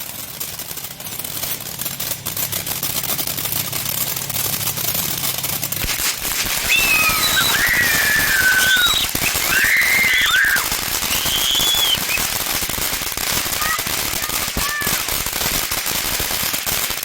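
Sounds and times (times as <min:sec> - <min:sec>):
firework fountain hissing and crackling: 0:00.0 - 0:17.0
high whistle sliding down: 0:06.6 - 0:12.2.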